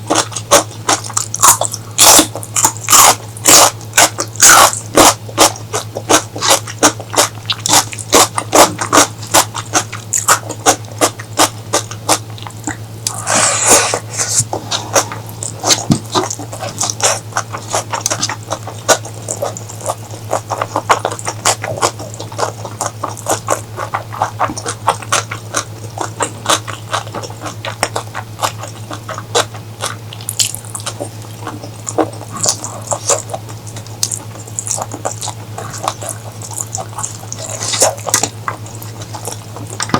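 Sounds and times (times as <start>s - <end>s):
chewing and lip-smacking: 0.0s - 39.9s
steady low hum: 0.0s - 39.9s
slurp: 13.0s - 15.8s.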